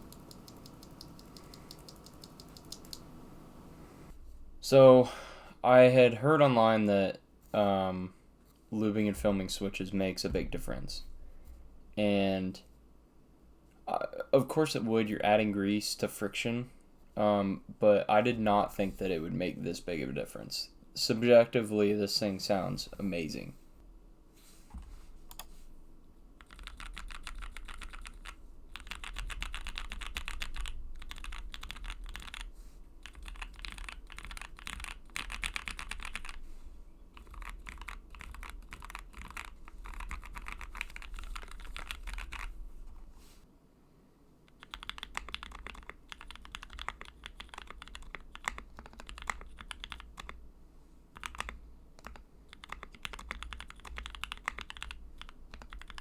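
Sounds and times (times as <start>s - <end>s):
mechanical keyboard typing: 0.0s - 3.0s, 26.4s - 36.4s, 37.1s - 42.5s, 44.5s - 50.4s, 51.2s - 56.0s.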